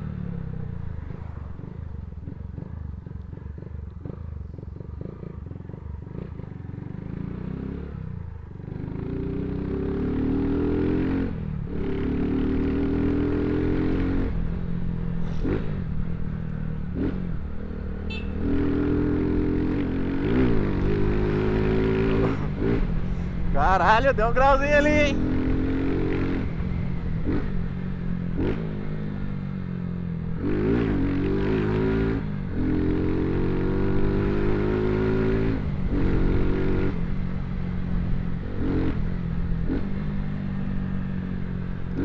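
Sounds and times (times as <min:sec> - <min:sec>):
motorcycle engine accelerating: 0:00.0 - 0:42.0.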